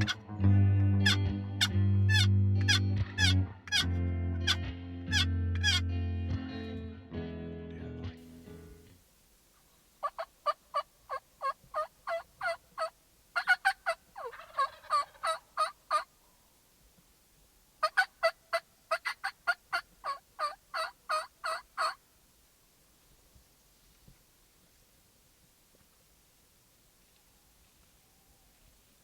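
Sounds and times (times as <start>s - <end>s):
turkey yelping: 1.0s - 3.9s, 4.5s - 5.8s, 10.0s - 16.1s, 17.8s - 22.0s.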